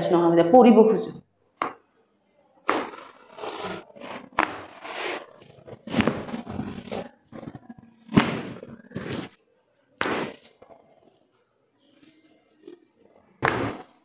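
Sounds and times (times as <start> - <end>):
clothing rustling on a table: 8.1 - 9.4.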